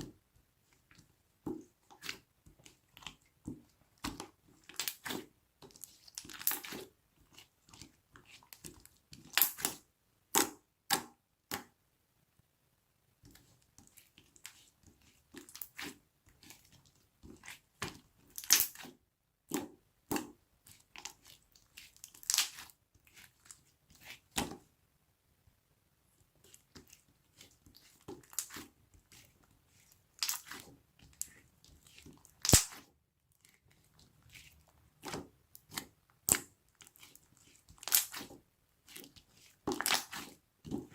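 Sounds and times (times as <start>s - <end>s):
slime squeezed with sticky pops: 32.3s - 32.9s, 37.8s - 38.3s.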